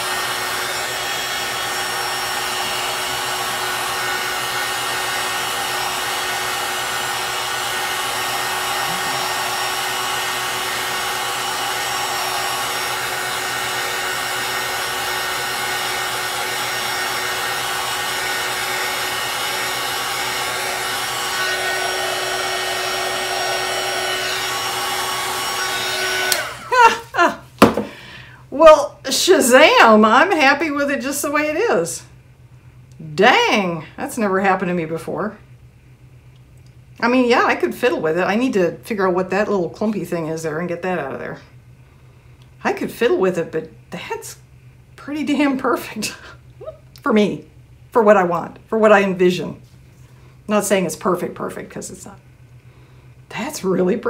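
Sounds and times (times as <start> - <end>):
heat gun blowing: 0.0 - 28.0.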